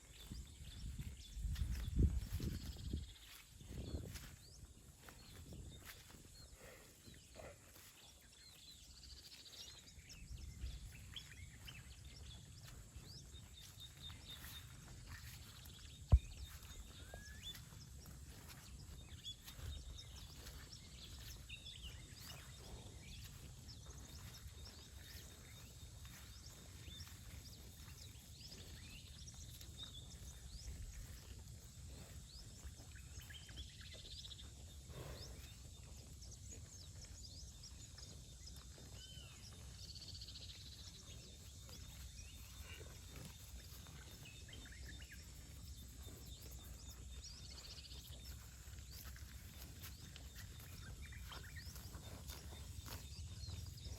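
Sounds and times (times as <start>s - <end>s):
small bird chirps: 10.9s - 22.5s.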